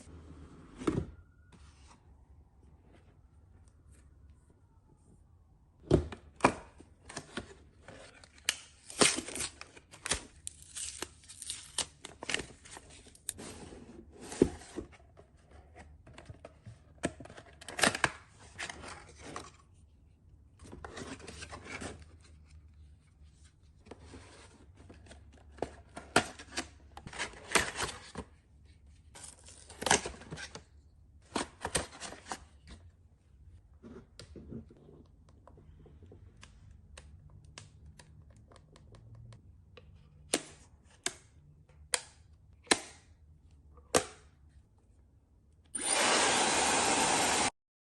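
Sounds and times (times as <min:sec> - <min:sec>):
packaging tearing and rustling: 0:08.2 - 0:13.4.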